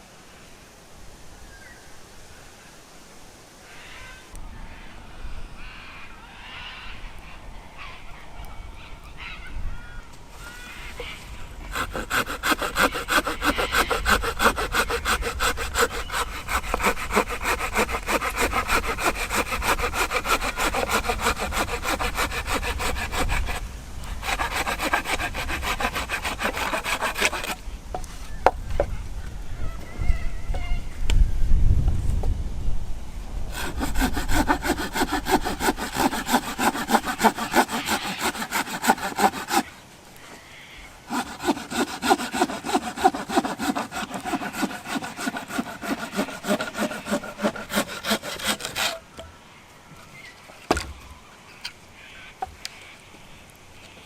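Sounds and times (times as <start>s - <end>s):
hand saw cutting wood: 11.6s - 27.6s, 33.5s - 39.7s, 41.1s - 49.0s.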